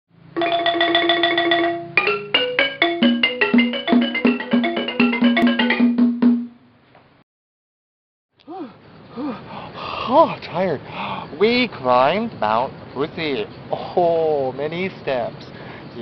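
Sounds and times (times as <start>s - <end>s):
instrumental jingle of struck notes: 0.4s - 6.6s.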